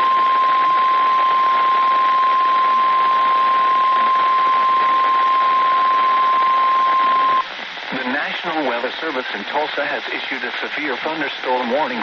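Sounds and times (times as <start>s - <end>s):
steady alarm tone: 0.0s - 7.4s
radio static hiss: 0.0s - 12.0s.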